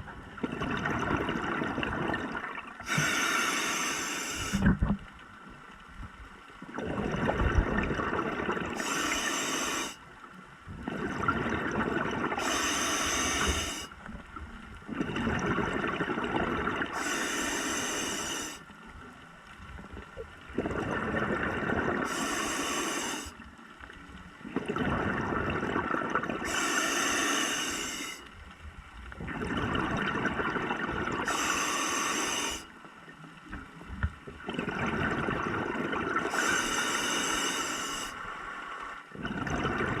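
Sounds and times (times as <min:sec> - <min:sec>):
exhaled bubbles rushing: 0:00.4 - 0:03.1, 0:06.7 - 0:09.3, 0:10.8 - 0:13.8, 0:14.9 - 0:17.1, 0:20.5 - 0:22.3, 0:24.4 - 0:26.6, 0:29.2 - 0:31.5, 0:34.4 - 0:36.7, 0:39.1 - 0:40.0
regulator hiss on inhale: 0:02.8 - 0:04.8, 0:08.8 - 0:10.1, 0:12.4 - 0:14.1, 0:16.9 - 0:18.7, 0:22.0 - 0:23.5, 0:26.4 - 0:28.4, 0:31.2 - 0:32.8, 0:36.2 - 0:38.5.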